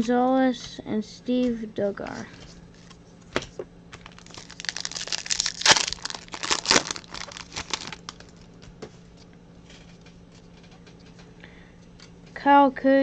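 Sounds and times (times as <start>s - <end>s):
foil wrapper crinkling and tearing: 3.9s - 8.7s.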